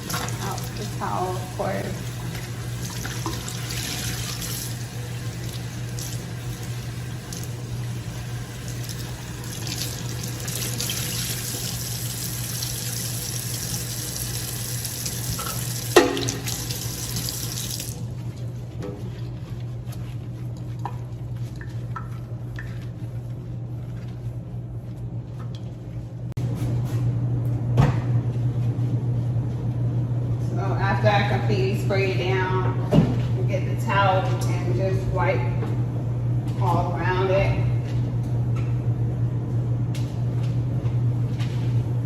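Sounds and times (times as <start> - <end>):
towel being rinsed: 0.0 - 25.8
tap running into sink: 15.1 - 17.9.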